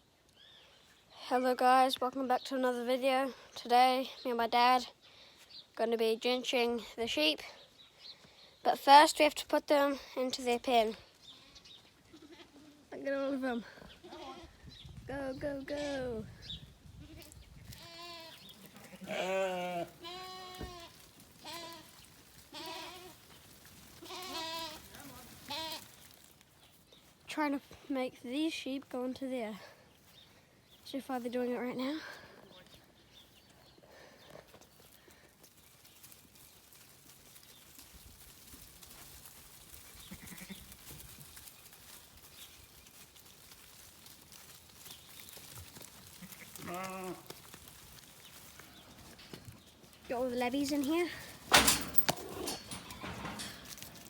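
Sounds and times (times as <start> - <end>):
sheep bleating: 17.1 - 23.2, 24.0 - 25.8, 40.1 - 40.6, 46.1 - 47.4
clicks and knocks: 51.5 - 53.7.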